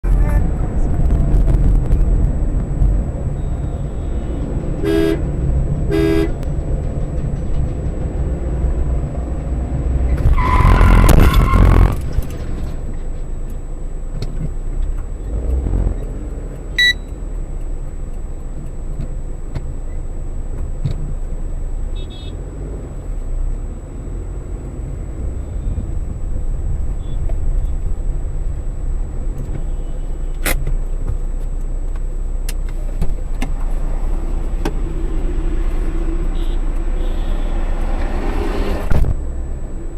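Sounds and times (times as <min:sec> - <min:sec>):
car engine and road rumble: 0:00.0 - 0:39.9
car horn toots: 0:03.4 - 0:05.3, 0:05.9 - 0:06.4, 0:10.2 - 0:12.0, 0:21.9 - 0:22.4, 0:29.6 - 0:30.5, 0:36.2 - 0:37.7.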